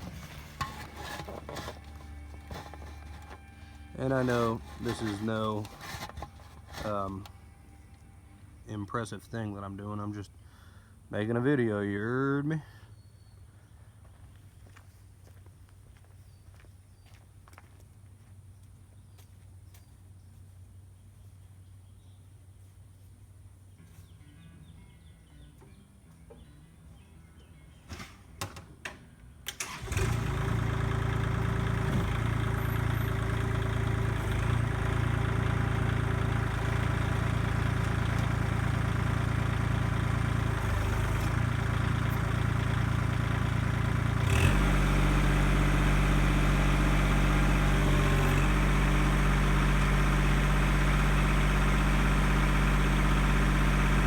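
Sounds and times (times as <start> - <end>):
tractor diesel engine running: 0.0 - 10.4, 29.5 - 54.0.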